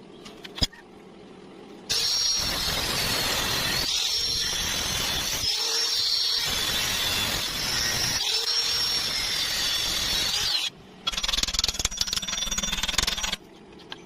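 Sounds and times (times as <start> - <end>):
angle grinder whining on steel: 1.9 - 10.7
welding arc crackling: 1.9 - 10.7.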